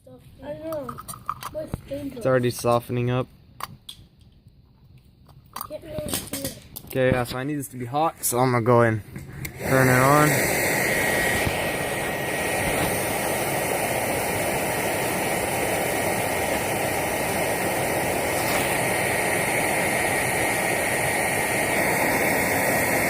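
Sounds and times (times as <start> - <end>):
air blower roaring with whine: 7.6 - 23.0.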